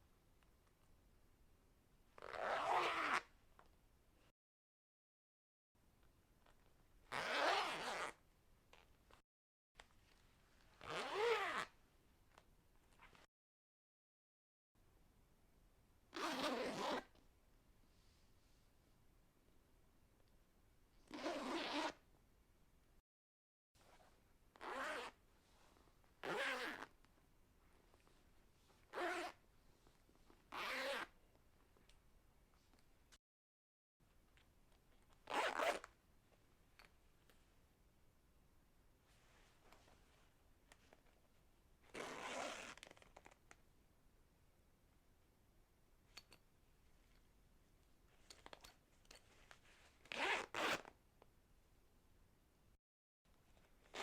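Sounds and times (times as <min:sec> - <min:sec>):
clothing zipper zipping: 0:02.2 - 0:03.3, 0:07.1 - 0:08.2, 0:10.8 - 0:11.8, 0:16.1 - 0:17.1, 0:21.1 - 0:22.0, 0:24.6 - 0:25.2, 0:26.2 - 0:26.9, 0:28.9 - 0:29.4, 0:30.5 - 0:31.2, 0:35.2 - 0:35.9, 0:41.8 - 0:43.3, 0:49.6 - 0:50.9.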